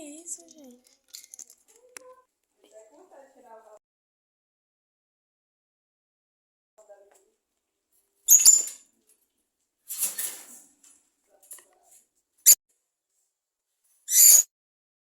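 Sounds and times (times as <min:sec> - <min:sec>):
birds making harsh raspy calls: 0:14.1 - 0:14.4.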